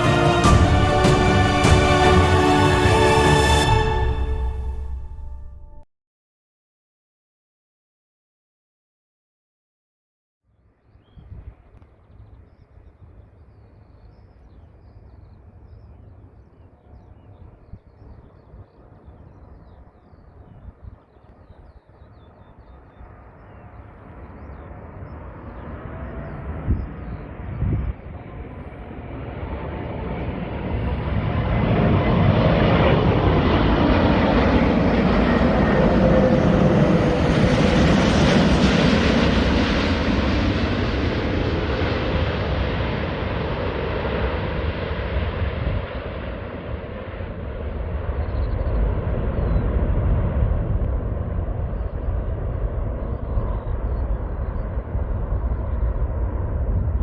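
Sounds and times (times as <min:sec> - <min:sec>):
jet engines roaring: 0:00.0 - 0:05.8, 0:23.0 - 0:57.0
jet engine whine: 0:00.0 - 0:05.9, 0:13.6 - 0:57.0.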